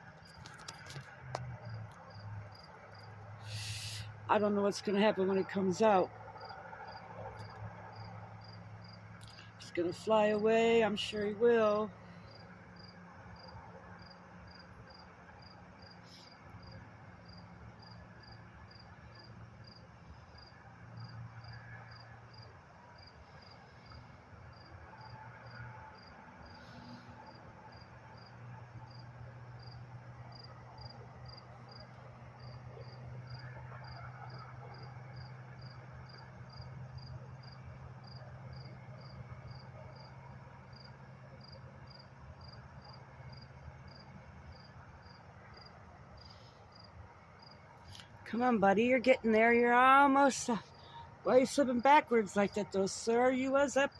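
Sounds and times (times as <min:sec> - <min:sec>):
insect chirping: 0:06.4 - 0:09.8, 0:12.0 - 0:19.8, 0:28.9 - 0:40.1, 0:40.7 - 0:48.0.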